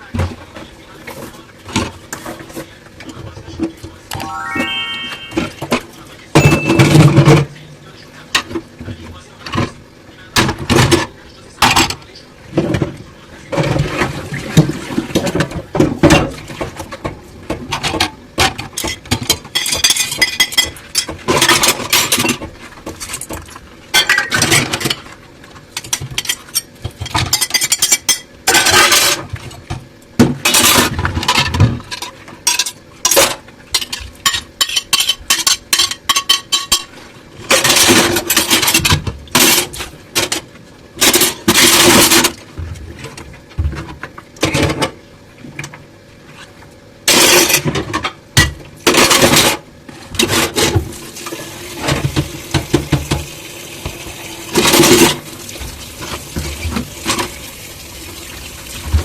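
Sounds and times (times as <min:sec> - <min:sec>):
crockery and cutlery clinking: 0:06.4 - 0:07.5
hissing washing water: 0:50.8 - 0:59.0.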